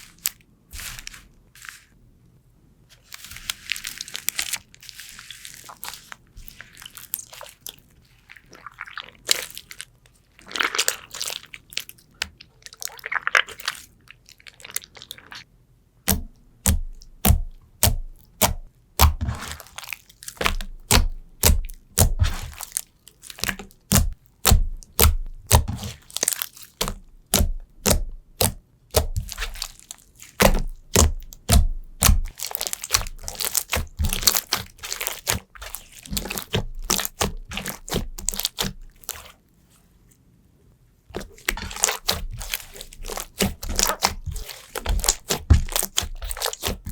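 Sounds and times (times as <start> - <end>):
slime squishing by hand: 0.0 - 2.0, 2.9 - 39.8, 41.1 - 46.9
slime clicking: 16.1 - 19.3, 20.4 - 39.3, 41.1 - 46.9.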